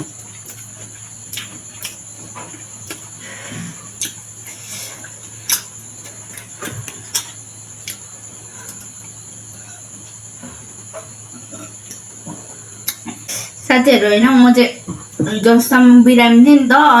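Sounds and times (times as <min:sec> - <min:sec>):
chewing clicks and smacks: 0:00.2 - 0:03.2, 0:04.0 - 0:08.0, 0:12.8 - 0:13.2.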